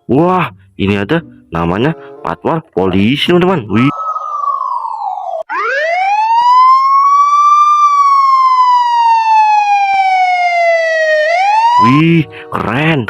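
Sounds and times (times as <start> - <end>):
police siren wailing: 3.7 - 12.5.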